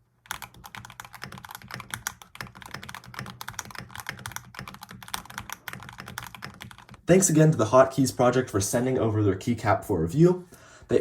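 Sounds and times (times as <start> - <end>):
fast typing on mechanical keyboard: 0.2 - 7.1.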